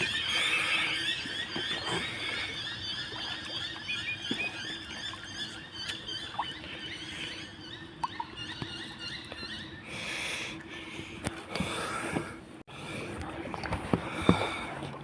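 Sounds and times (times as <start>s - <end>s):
chorus of high-pitched animal chirps: 0.0s - 9.8s.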